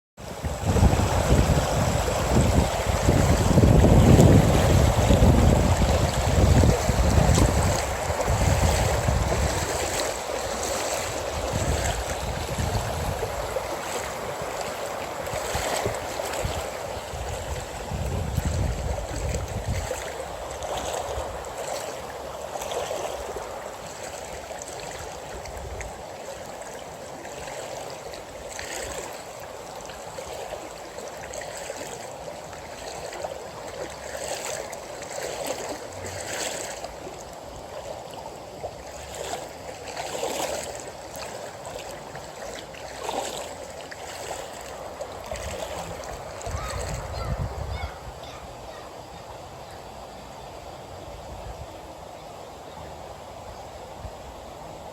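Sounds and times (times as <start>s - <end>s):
flowing water rushing: 0.2s - 54.9s
low rumbling gusts: 0.4s - 9.7s, 15.8s - 19.9s, 45.4s - 48.2s.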